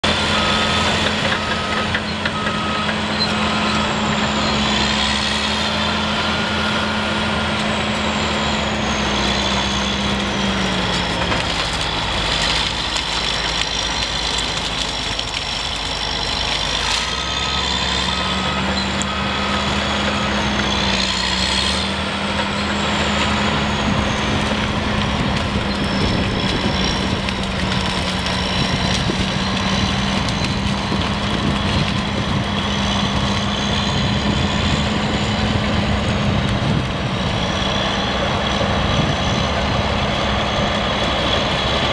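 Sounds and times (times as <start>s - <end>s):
bulldozer diesel engine running: 0.0s - 41.9s
drivetrain and tracks whine: 0.0s - 41.9s
reversing alarm beeps: 0.2s - 4.8s, 16.7s - 21.0s.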